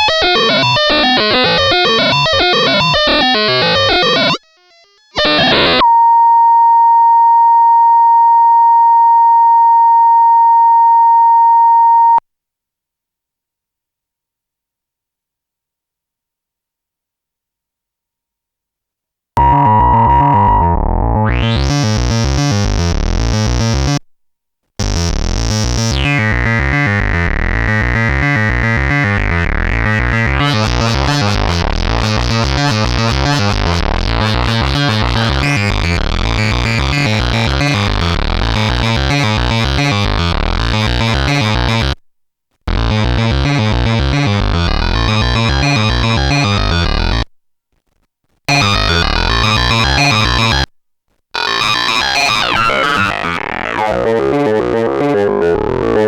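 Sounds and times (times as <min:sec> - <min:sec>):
pulsing synthesizer with filter sweep: 0:00.0 - 0:05.8.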